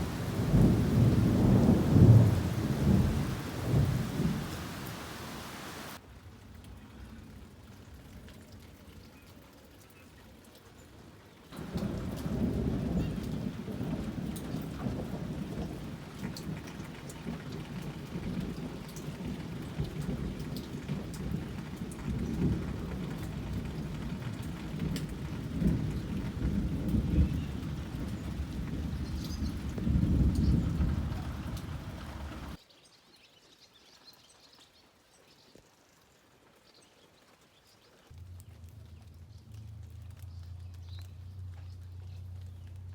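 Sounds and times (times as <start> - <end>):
rolling thunder: 0.0 - 6.0, 11.6 - 32.6
heavy rain: 0.0 - 8.9, 11.5 - 32.6.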